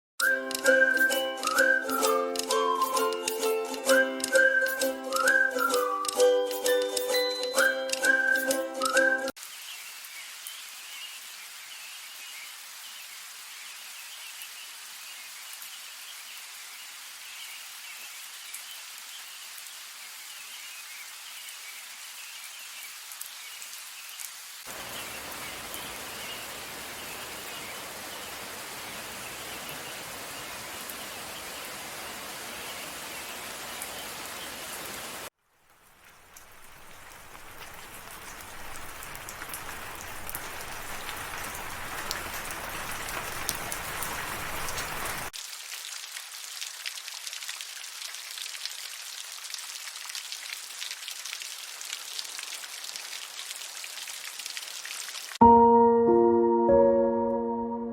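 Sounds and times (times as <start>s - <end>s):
steady rain falling: 0.2s - 55.4s.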